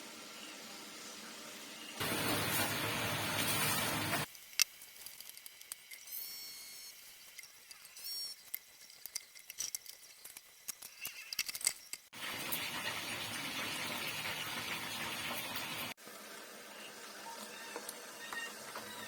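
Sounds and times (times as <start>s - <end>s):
utensils clicking and tapping: 7.2s - 12.2s.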